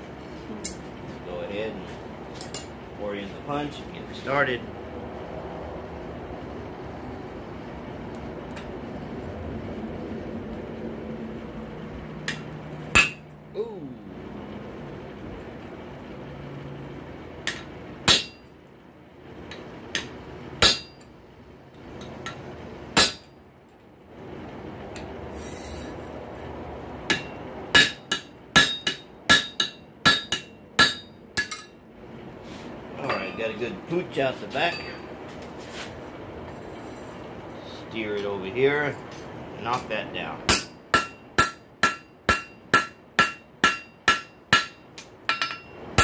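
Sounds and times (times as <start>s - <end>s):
hammer ringing on metal punch: 12.3s - 13.2s, 17.5s - 18.5s, 20.0s - 21.1s, 27.1s - 31.8s, 40.5s - 46.0s.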